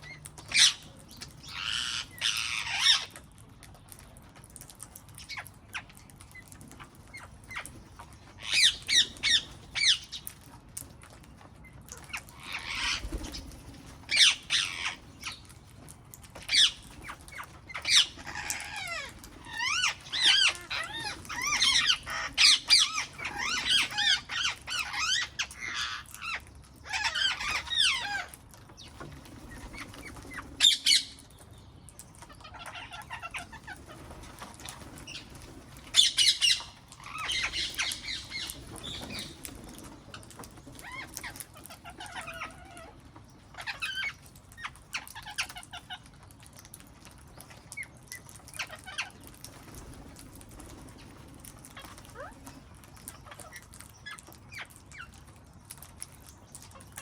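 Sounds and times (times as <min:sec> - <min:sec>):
parrots chattering calls: 0:00.0 - 0:03.2, 0:05.2 - 0:10.5, 0:11.9 - 0:15.7, 0:16.3 - 0:31.3, 0:32.2 - 0:46.2, 0:47.4 - 0:50.0, 0:50.6 - 0:55.3
parrots squawking: 0:00.0 - 0:03.2, 0:08.3 - 0:10.3, 0:11.9 - 0:15.6, 0:16.3 - 0:28.4, 0:29.3 - 0:31.2, 0:32.2 - 0:46.3, 0:47.7 - 0:49.4, 0:51.5 - 0:55.2.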